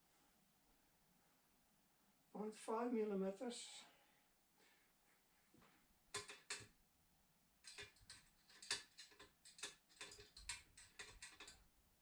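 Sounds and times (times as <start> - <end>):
hand tool clicking: 7.7 - 11.6.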